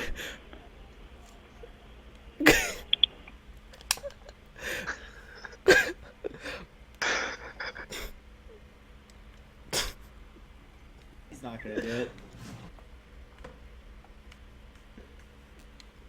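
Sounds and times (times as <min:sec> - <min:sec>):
person coughing: 0:02.4 - 0:02.9, 0:04.7 - 0:08.2, 0:09.8 - 0:10.0.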